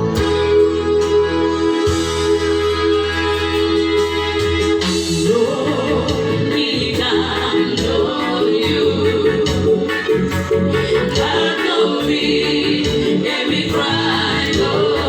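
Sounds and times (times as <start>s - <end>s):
held keyboard chords: 0.0s - 15.0s
person singing: 4.9s - 15.0s.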